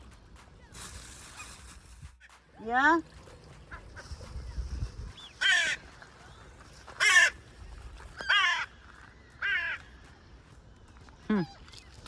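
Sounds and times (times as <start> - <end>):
crow cawing: 5.4 - 5.8, 7.0 - 7.4, 8.2 - 8.7, 9.4 - 9.8.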